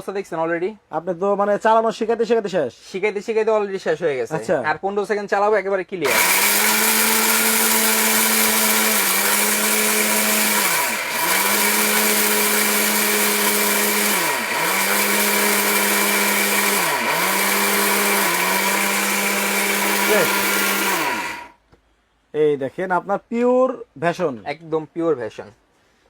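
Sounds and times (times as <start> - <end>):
mixer grinder blender running: 6.1 - 21.6.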